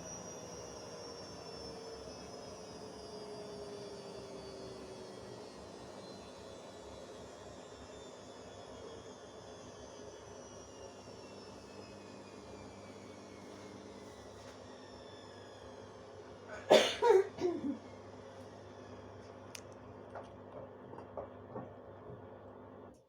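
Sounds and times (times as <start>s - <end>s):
short cough-like sound: 16.5s - 17.8s.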